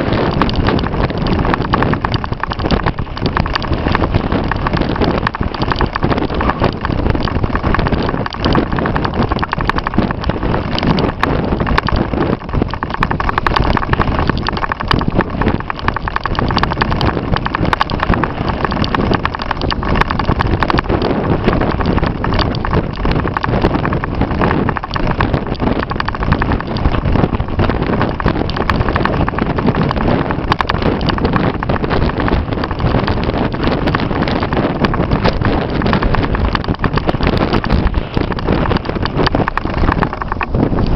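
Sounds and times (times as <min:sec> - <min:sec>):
strong wind buffeting microphone: 0:00.0 - 0:40.9.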